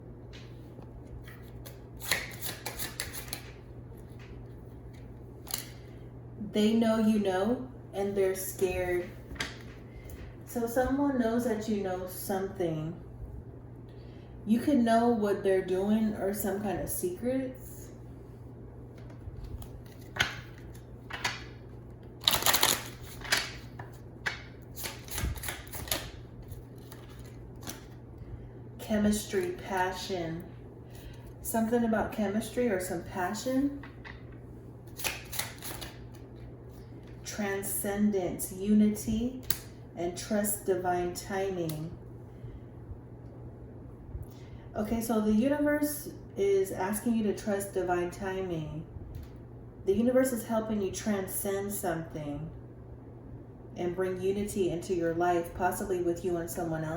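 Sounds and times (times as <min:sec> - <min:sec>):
soft card handling: 0:00.4 - 0:05.9, 0:18.9 - 0:28.0
cards being shuffled: 0:01.1 - 0:05.8, 0:19.0 - 0:21.5, 0:22.1 - 0:28.0, 0:34.9 - 0:36.4.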